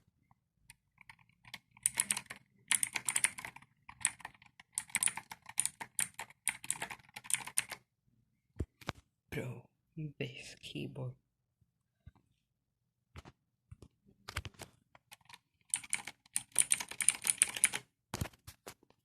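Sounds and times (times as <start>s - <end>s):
mechanical keyboard typing: 0.7s - 7.8s, 15.0s - 17.9s.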